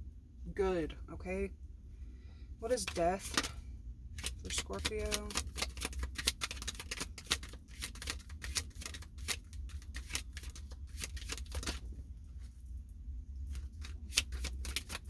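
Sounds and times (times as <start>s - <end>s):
low steady hum: 0.0s - 15.0s
cards being shuffled by hand: 2.6s - 3.6s, 4.2s - 12.5s, 13.5s - 15.0s.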